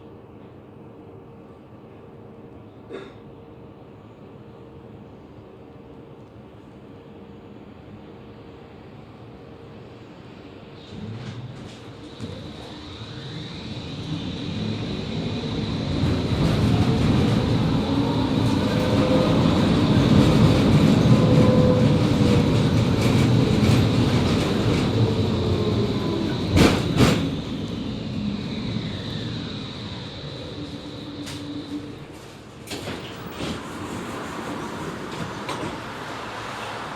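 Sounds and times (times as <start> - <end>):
tram traction motor whine: 10.8 - 36.7
wheel-on-rail rumble: 10.9 - 36.9.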